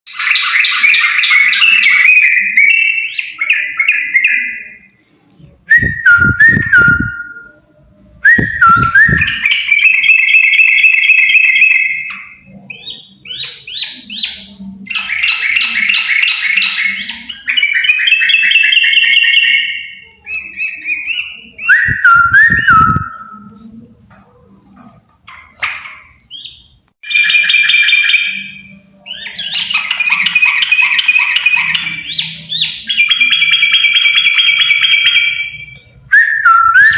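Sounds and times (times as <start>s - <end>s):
bulbuls singing: 0.1s - 36.9s
low thumping: 5.7s - 7.3s, 8.1s - 9.4s.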